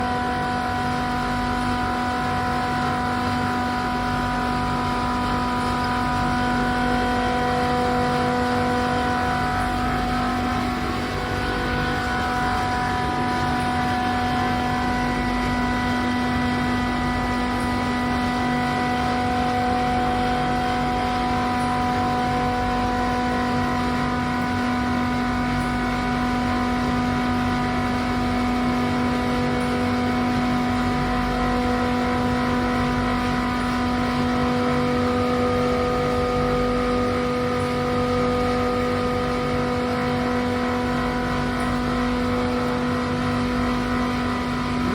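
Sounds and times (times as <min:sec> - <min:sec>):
chiller machinery humming: 0:00.0 - 0:44.9.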